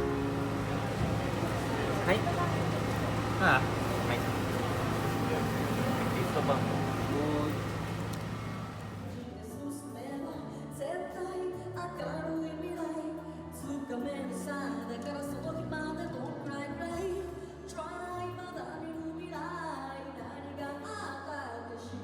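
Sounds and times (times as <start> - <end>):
bass and accompaniment: 0.0 - 9.3.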